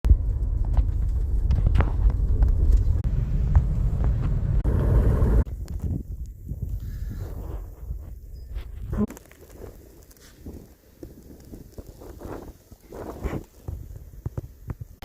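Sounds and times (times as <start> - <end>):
wind buffeting microphone: 0.1 - 9.1.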